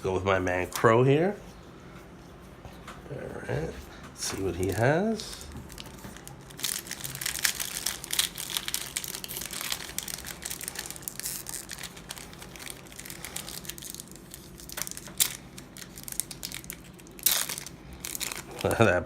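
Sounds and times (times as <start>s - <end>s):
foil wrapper tearing and crinkling: 4.6s - 19.0s.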